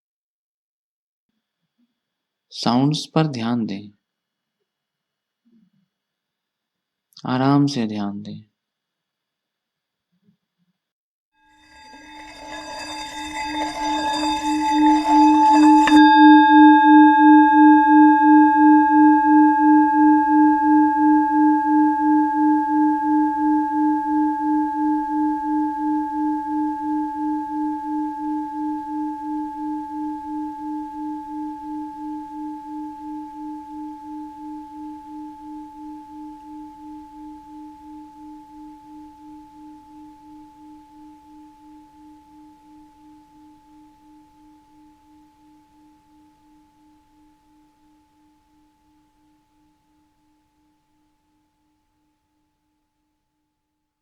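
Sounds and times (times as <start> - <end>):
singing bowl ringing: 11.4 - 50.8
rough rubbing sound: 11.8 - 16.0.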